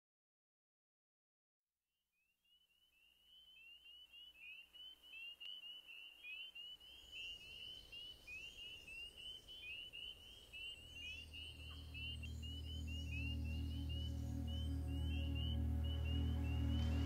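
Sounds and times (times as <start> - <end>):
rapid bird chirping: 2.6 - 17.0
higher bird calls: 3.4 - 17.0
low musical drone: 10.8 - 17.0.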